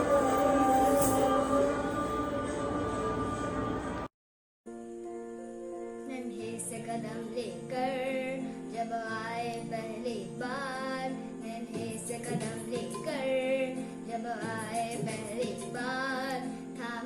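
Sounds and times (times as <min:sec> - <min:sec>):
held instrumental chords: 0:00.0 - 0:04.1
high singing voice: 0:00.0 - 0:04.1.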